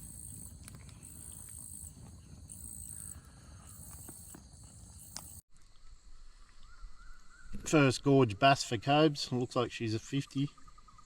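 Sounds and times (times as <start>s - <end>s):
insects buzzing in pulses: 0.0s - 5.4s.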